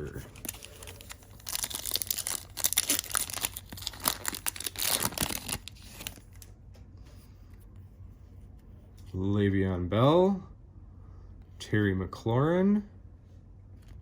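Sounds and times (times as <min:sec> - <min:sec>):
foil wrapper tearing and crinkling: 0:00.3 - 0:06.5.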